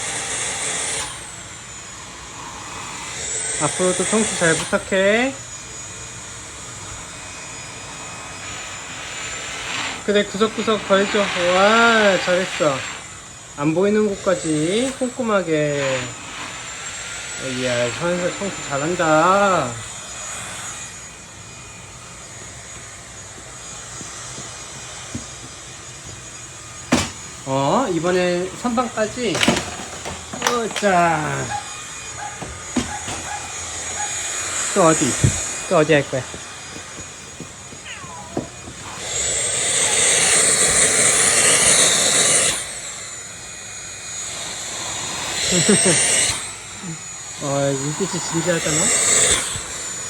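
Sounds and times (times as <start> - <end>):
vacuum cleaner running: 0.0 - 50.0
nozzle knocking: 26.9 - 27.3.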